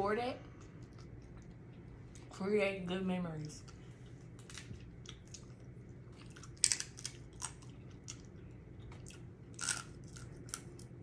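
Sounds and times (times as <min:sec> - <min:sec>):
chewing: 0:00.4 - 0:02.3, 0:03.5 - 0:11.0
crab shell cracking: 0:06.3 - 0:08.4.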